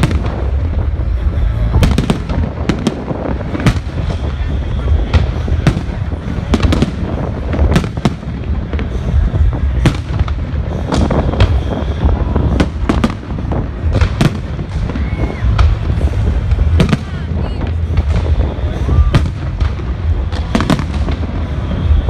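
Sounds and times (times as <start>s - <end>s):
fireworks bangs and cracks: 0.0s - 22.0s
low rumble: 0.0s - 22.0s.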